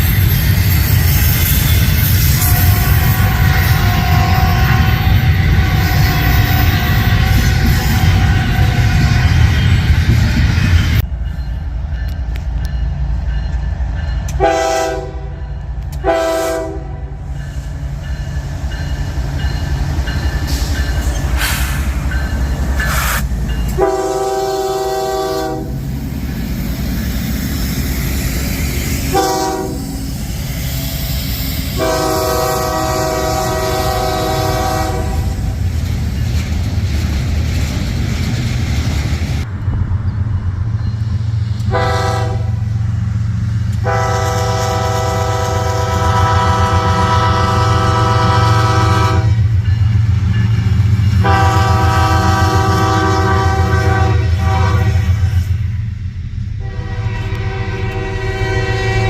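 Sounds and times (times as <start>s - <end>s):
train rumble: 0.0s - 59.0s
locomotive air horn blasts: 2.0s - 9.5s, 14.4s - 17.3s, 22.8s - 25.8s, 29.0s - 30.1s, 31.7s - 35.4s, 41.7s - 42.7s, 43.8s - 49.6s, 51.2s - 55.5s, 56.6s - 59.0s.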